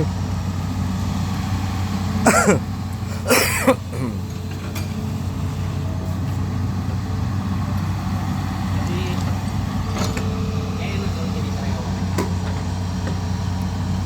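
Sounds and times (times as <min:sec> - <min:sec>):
diesel engine running: 0:00.0 - 0:14.0
person making short vocal sounds: 0:02.3 - 0:04.2.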